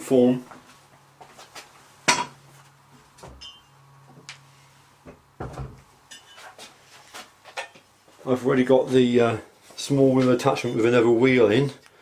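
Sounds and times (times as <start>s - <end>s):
metal knocks and clinks: 3.3s - 3.8s.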